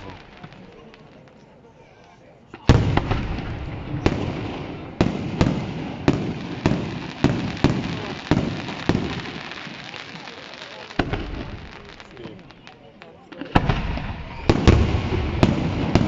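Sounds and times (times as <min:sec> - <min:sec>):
fireworks bangs: 0:00.0 - 0:16.0.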